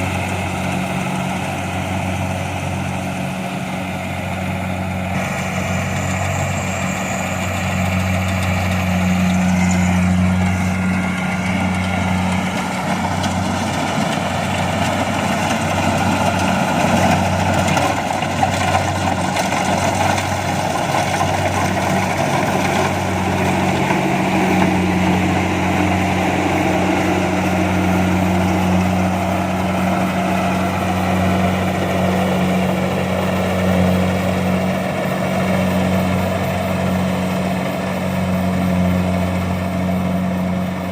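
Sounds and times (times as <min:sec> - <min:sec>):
diesel engine low hum: 0:00.0 - 0:40.9.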